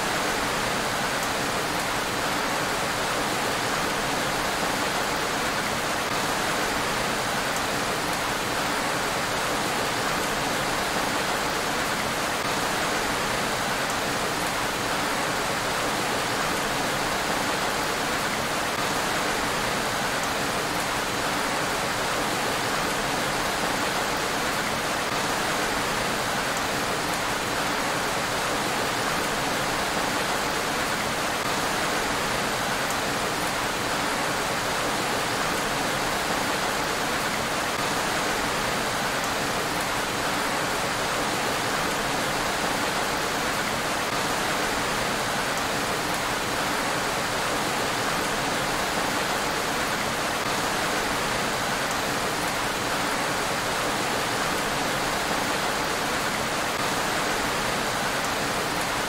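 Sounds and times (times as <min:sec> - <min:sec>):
rain falling on a road: 0:00.0 - 0:59.0.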